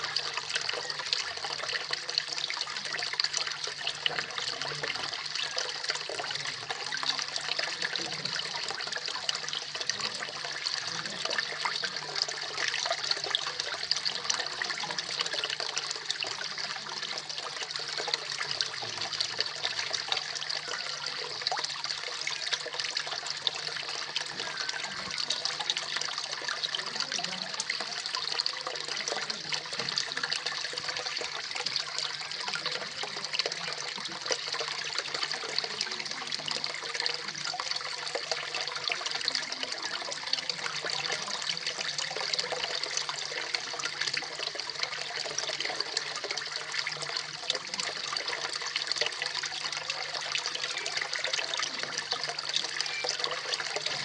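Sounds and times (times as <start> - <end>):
waterfall splashing into pond: 0.0 - 54.0.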